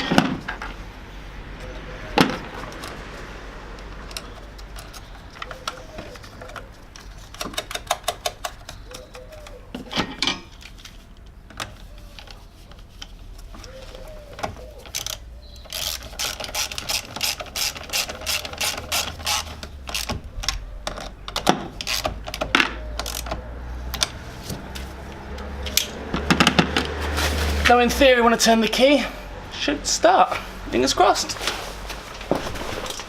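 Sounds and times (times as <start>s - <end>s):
ratchet wrench clicking: 14.9s - 20.1s.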